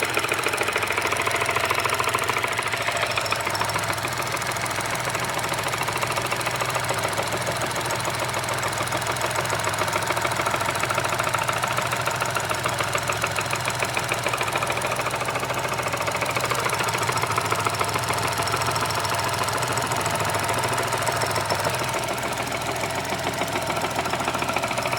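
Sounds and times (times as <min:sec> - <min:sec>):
engine rattling and knocking: 0:00.0 - 0:24.9.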